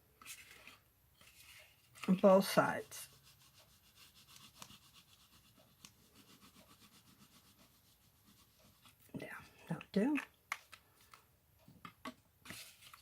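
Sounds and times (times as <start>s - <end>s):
glue tip rubbing on cardstock: 3.0s - 8.9s.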